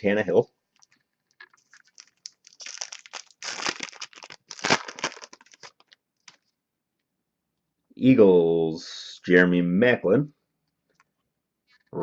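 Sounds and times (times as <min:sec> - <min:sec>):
card wrapper crinkling: 0:00.7 - 0:06.5.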